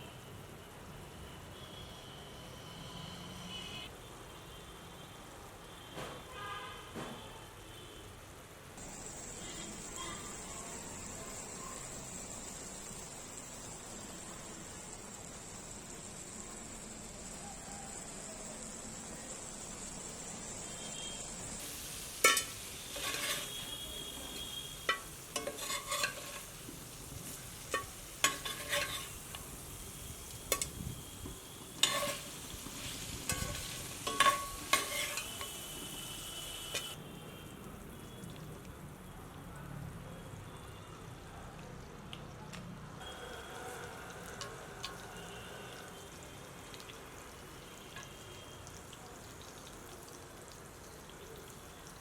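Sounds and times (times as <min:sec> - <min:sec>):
food sizzling in a pan: 0:08.8 - 0:39.0, 0:43.0 - 0:52.0
utensil scraping a pan: 0:22.2 - 0:23.7, 0:24.9 - 0:26.6, 0:27.7 - 0:29.4, 0:31.8 - 0:35.5.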